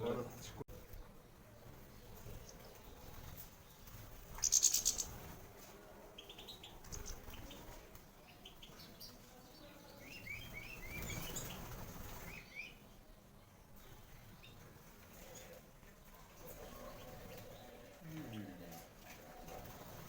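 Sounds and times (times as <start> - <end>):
birds chirping: 0.0 - 20.0.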